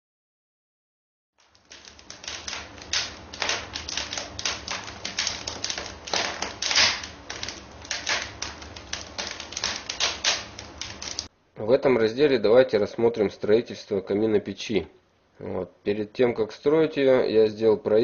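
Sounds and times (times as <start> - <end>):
rapid clatter of sharp clicks: 1.4 - 11.3.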